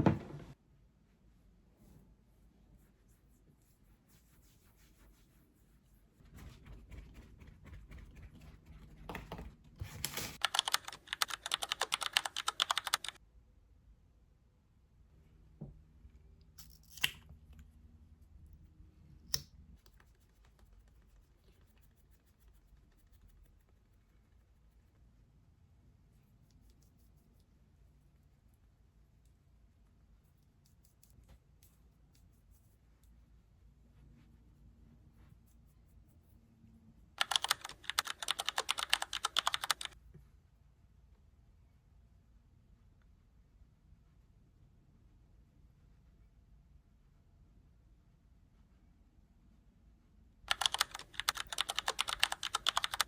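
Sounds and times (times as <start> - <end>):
typing on computer keyboard: 10.4 - 13.2, 37.2 - 40.0, 50.5 - 53.0.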